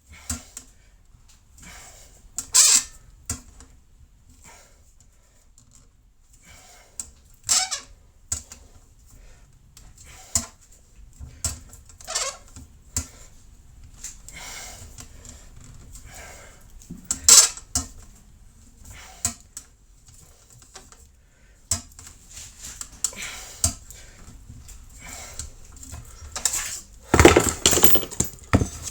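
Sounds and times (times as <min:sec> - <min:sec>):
tools rubbing and scraping metal: 0:27.1 - 0:28.9
metal clinks and taps: 0:27.2 - 0:28.9.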